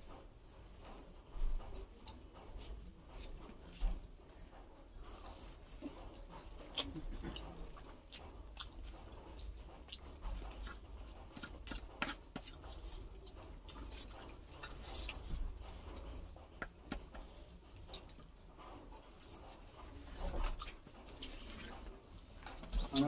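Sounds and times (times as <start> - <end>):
person chewing with mouth clicks: 5.2 - 18.3, 18.9 - 23.0.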